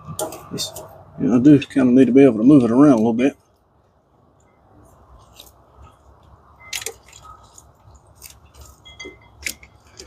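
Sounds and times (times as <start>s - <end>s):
rustling wires: 2.8s - 10.0s.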